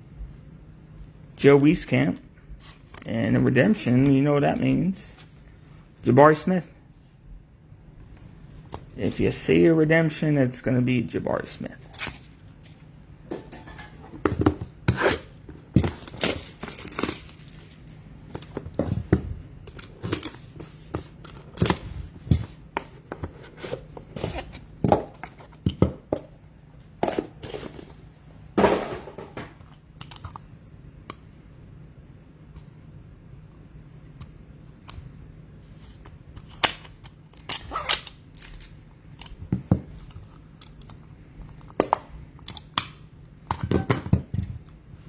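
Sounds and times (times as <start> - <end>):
card wrappers tearing and crinkling: 14.9 - 18.0.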